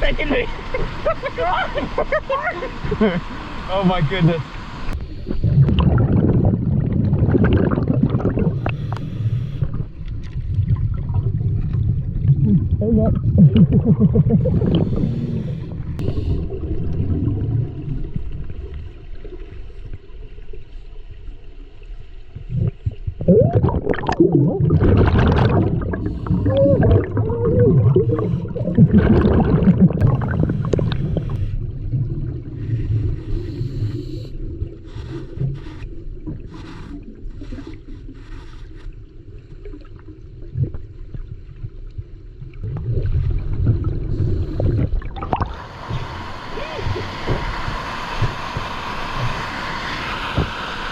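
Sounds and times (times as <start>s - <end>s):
underwater turbulent water rumble: 0.0s - 50.9s
gurgling bubbles: 2.8s - 20.1s, 22.3s - 37.4s, 39.6s - 50.9s.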